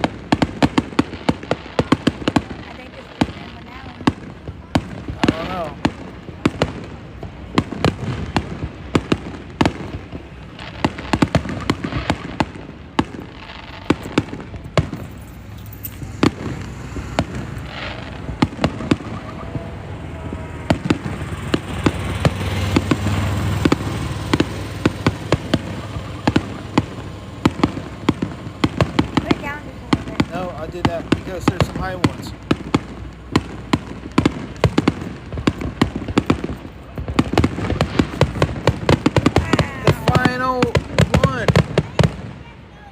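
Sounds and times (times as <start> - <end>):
fireworks bangs: 0.0 - 42.9
low rumble: 10.0 - 30.3.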